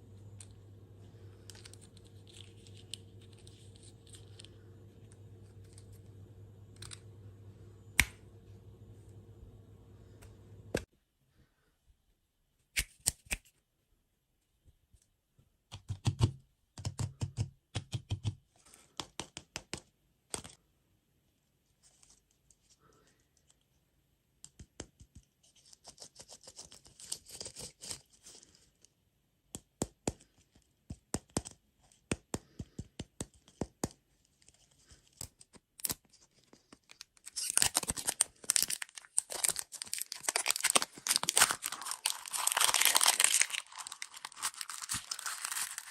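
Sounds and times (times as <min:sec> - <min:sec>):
plastic wrappers tearing and crinkling: 0:34.9 - 0:45.9.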